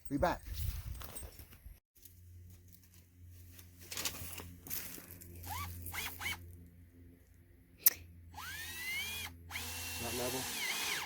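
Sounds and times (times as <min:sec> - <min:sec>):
scraping and handling noises: 0:00.7 - 0:05.9
cordless drill motor whine: 0:05.4 - 0:06.5, 0:08.3 - 0:11.0.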